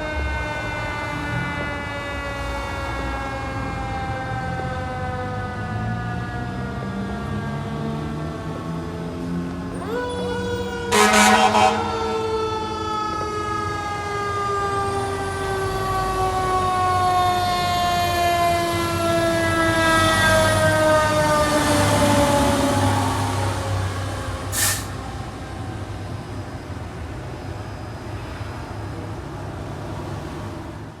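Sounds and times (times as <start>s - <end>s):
fire engine siren winding down: 0.0s - 30.3s
truck engine rumble: 0.0s - 31.0s
short loud horn blast: 10.8s - 12.2s.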